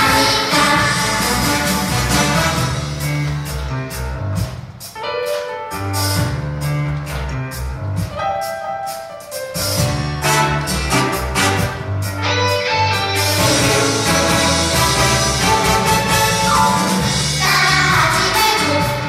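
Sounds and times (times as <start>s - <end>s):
upbeat pop music: 0.0s - 3.8s, 9.7s - 19.0s.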